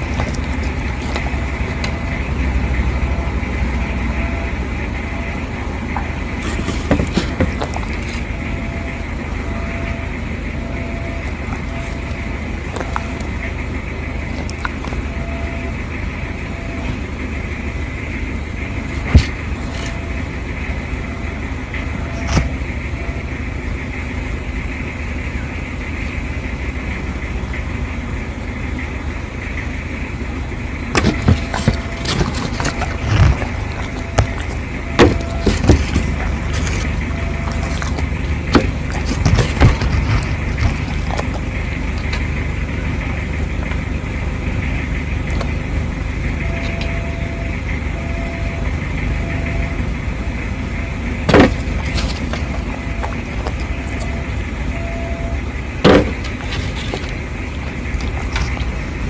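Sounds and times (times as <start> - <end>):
dog chewing and crunching food: 0.0 - 2.3, 5.8 - 8.6, 11.2 - 15.2, 18.8 - 20.2, 30.9 - 44.3, 51.0 - 54.6, 55.8 - 59.0.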